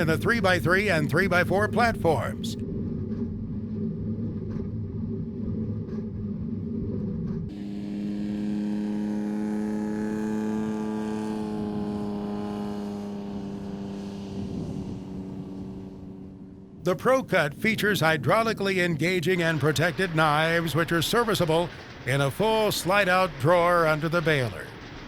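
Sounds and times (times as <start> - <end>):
steady engine drone: 0.0 - 25.0
baler rumble with knocks: 11.1 - 25.0.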